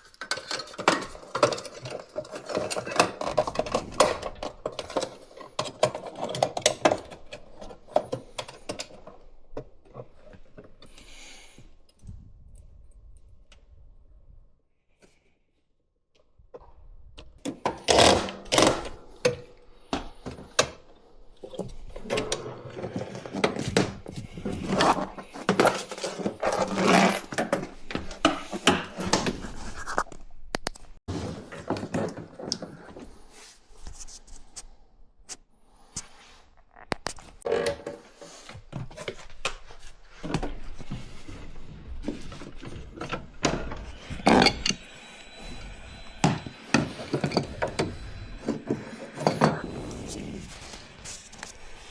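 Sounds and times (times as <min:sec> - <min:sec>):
hand tools clinking and scraping: 0:00.0 - 0:09.2, 0:21.4 - 0:30.1, 0:37.4 - 0:51.9.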